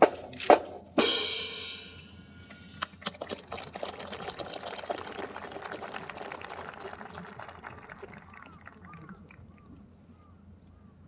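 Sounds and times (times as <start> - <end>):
cymbal crash: 1.0 - 2.8
spectators applauding: 3.7 - 9.7.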